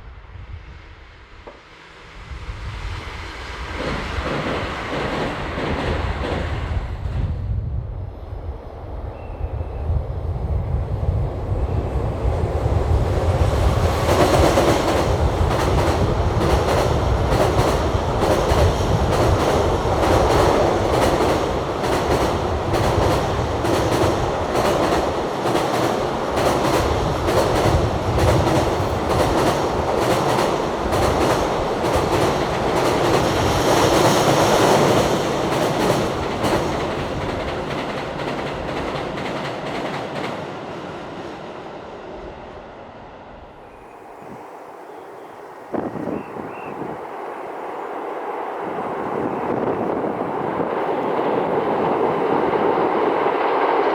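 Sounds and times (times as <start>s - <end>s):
train wheels clattering over rails: 3.7s - 6.8s, 12.3s - 41.2s.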